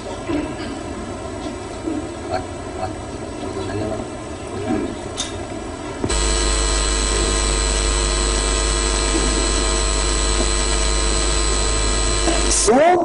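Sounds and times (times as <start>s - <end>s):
loud steady drone with hiss: 6.0s - 12.8s.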